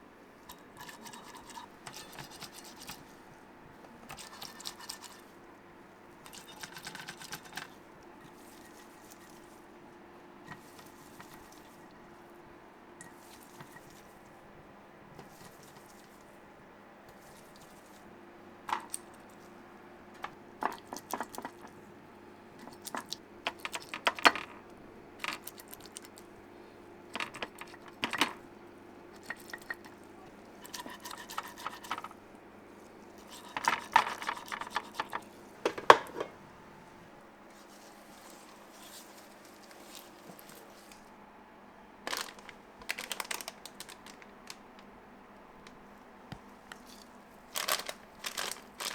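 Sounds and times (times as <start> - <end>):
metal pans clinking: 33.3 - 36.4.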